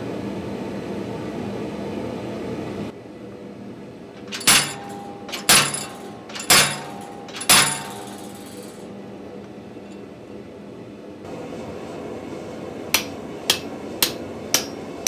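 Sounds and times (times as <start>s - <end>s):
hammer blows on anvil: 4.2s - 8.9s, 13.0s - 14.9s.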